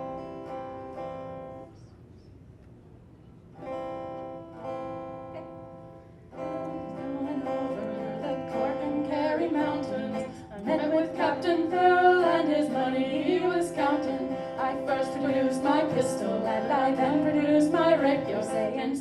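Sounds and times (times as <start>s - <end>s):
acoustic guitar strumming: 0.0s - 1.7s, 3.6s - 19.0s
person singing: 6.4s - 19.0s.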